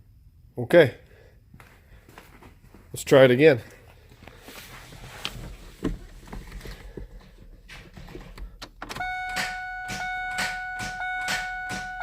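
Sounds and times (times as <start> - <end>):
ignition key clicks: 8.3 - 12.0
electronic warning chime: 9.0 - 12.0.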